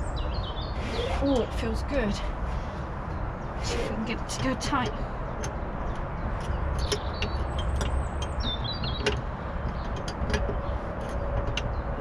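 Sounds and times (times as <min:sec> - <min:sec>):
high squeaks: 0:00.7 - 0:01.6
small metallic clicks: 0:04.3 - 0:12.0.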